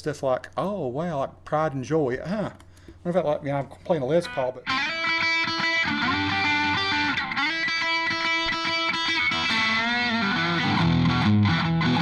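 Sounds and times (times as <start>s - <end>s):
electric guitar playing: 4.2s - 12.0s.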